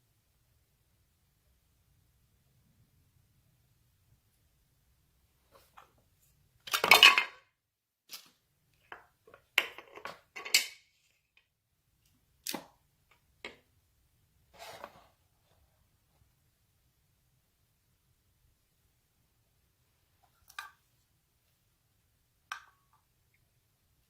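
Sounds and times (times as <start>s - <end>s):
small hard objects clattering: 6.7s - 7.4s.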